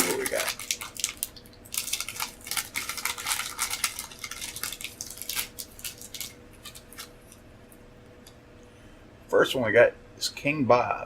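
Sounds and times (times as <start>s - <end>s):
packaging crinkling and rustling: 0.0s - 7.4s.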